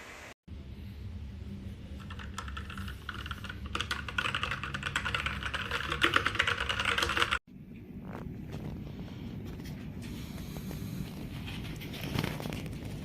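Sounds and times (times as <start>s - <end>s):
mechanical keyboard typing: 2.0s - 7.4s.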